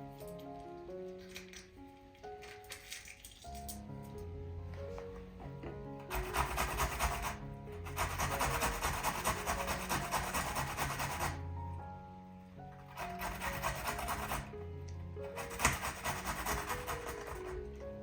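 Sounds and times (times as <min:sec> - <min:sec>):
soft background music: 0:00.0 - 0:18.0
food grating on hand grater: 0:06.1 - 0:11.4, 0:12.9 - 0:14.5, 0:15.3 - 0:17.6.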